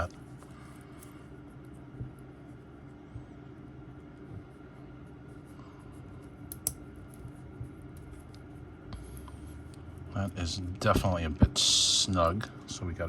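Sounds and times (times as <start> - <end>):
faint steady hum: 0.0 - 13.0
watch strap clicks and rubbing: 6.2 - 8.5.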